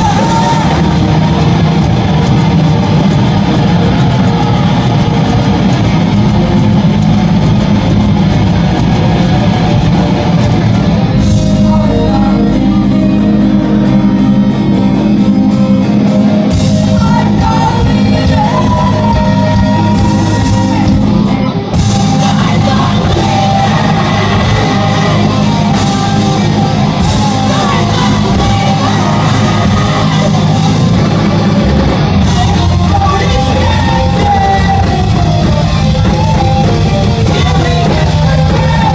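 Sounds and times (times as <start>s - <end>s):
singing and shouted vocals: 0.0s - 7.4s, 9.0s - 14.2s, 16.4s - 38.9s
live rock band playing: 0.0s - 38.9s.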